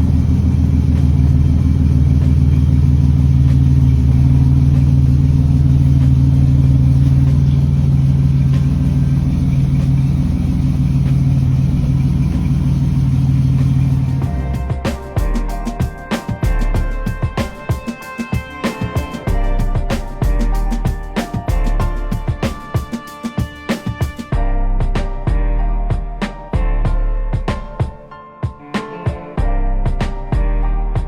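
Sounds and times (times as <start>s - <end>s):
car engine idling: 0.0s - 17.6s.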